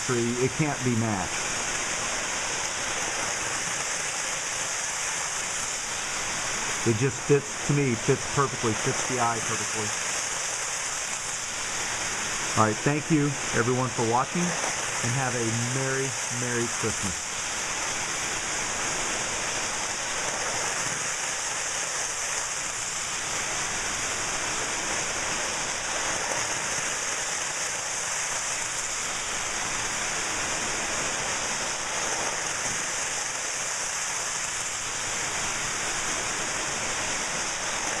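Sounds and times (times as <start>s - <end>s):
steady hiss: 0.0s - 38.0s.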